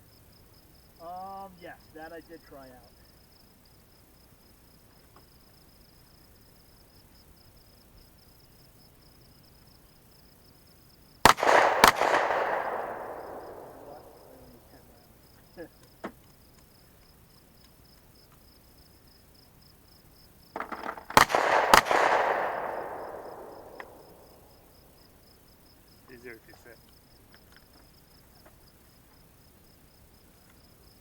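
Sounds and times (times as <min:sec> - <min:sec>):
gunshot echo: 0:11.2 - 0:14.9, 0:20.6 - 0:24.7
gunshots: 0:11.2 - 0:15.0, 0:20.6 - 0:24.7.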